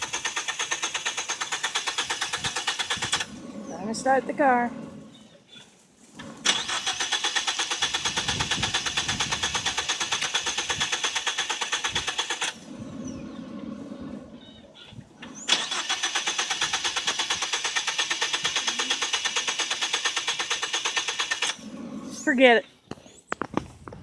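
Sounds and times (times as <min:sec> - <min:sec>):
car starter cranking engine: 0:00.0 - 0:03.5, 0:06.2 - 0:12.9, 0:15.2 - 0:22.0.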